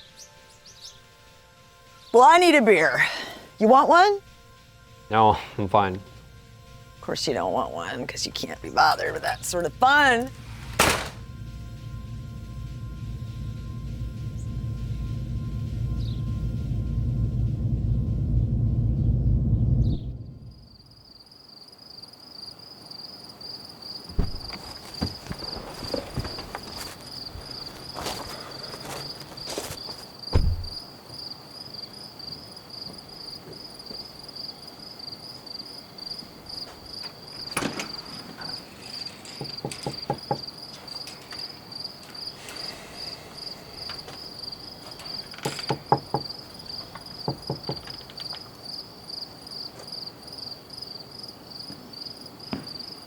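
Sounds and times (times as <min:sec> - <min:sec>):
crickets chirping: 0:00.0 - 0:53.0
knocks and clicks: 0:45.1 - 0:48.4.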